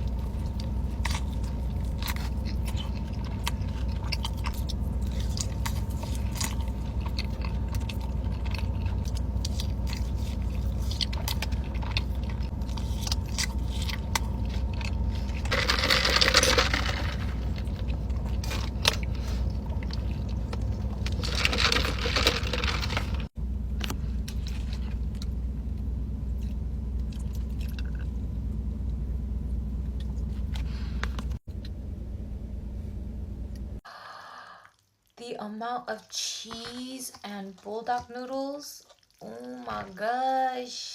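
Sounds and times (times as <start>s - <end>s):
crunching or rustling: 0.0s - 25.7s
crunchy bites and chewing: 0.0s - 28.2s
steady low hum: 0.0s - 34.2s.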